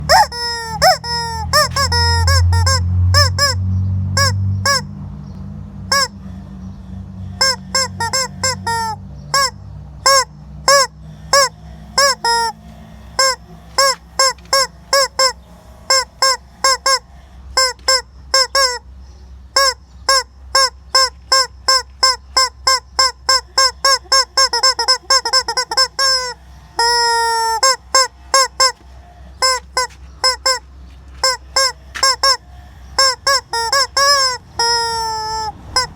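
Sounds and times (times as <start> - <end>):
rubber chicken toy squawking: 0.0 - 4.9, 5.9 - 6.3, 7.3 - 18.9, 19.5 - 35.9.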